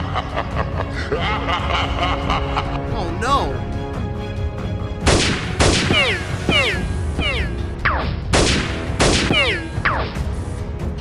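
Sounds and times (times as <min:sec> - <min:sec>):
background music: 0:00.0 - 0:11.0
gunfire bursts: 0:05.1 - 0:06.4, 0:08.3 - 0:09.5.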